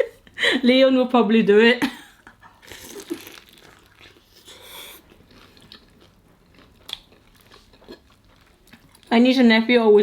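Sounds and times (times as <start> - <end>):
crunchy chewing: 2.6 - 9.1.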